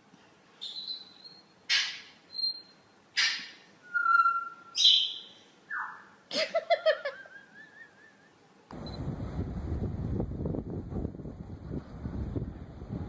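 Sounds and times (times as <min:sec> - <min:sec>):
bird-like squawks and whistles: 0:00.6 - 0:06.1.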